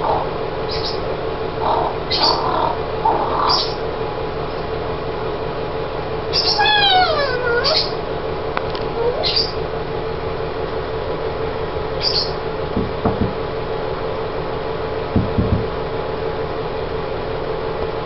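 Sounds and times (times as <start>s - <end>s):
room hum: 0.0s - 18.0s
parrot squeaking: 1.7s - 3.8s, 6.3s - 8.0s, 8.9s - 9.6s, 12.0s - 12.4s.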